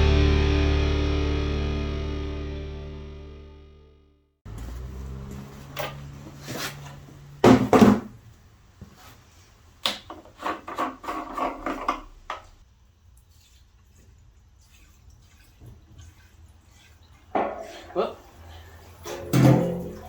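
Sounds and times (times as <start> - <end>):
lawnmower scraping clatter: 10.3 - 12.2.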